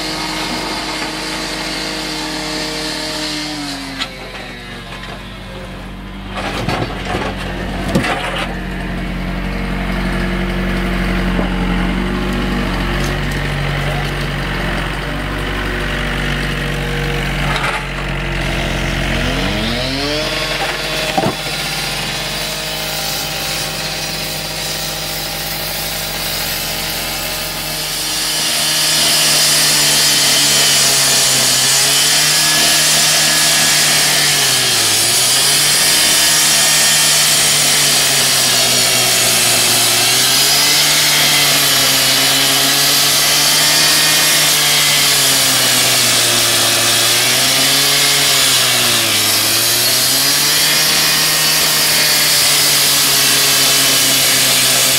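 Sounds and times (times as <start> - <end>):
demolition machinery engine revving: 0.0 - 54.9.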